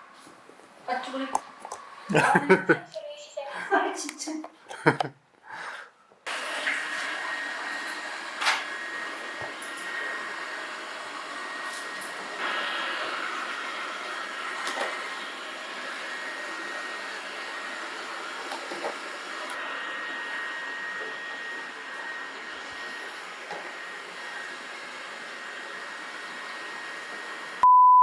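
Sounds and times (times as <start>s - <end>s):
robot vacuum cleaner running: 6.3s - 27.6s.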